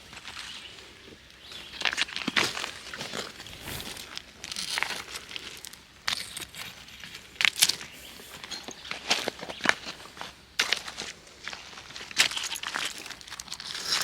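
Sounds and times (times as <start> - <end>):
footsteps crunching on gravel: 3.2 - 4.7.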